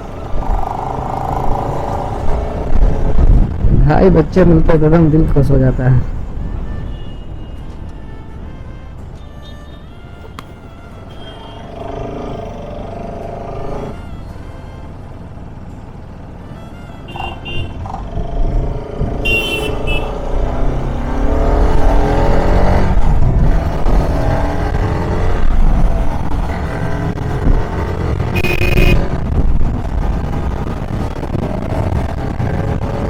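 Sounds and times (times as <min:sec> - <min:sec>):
motorcycle engine: 0:00.0 - 0:03.7, 0:11.1 - 0:33.0
wind and road rush: 0:00.0 - 0:33.0
short horn beeps: 0:16.6 - 0:17.8, 0:19.2 - 0:20.2, 0:28.3 - 0:29.1.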